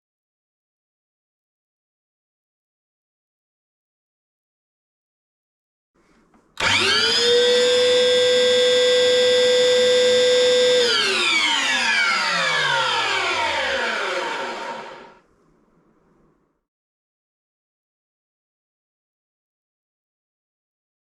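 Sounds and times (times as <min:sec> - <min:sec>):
cutting noise from motor: 0:06.6 - 0:15.2
extractor motor and fan whine: 0:06.6 - 0:15.2.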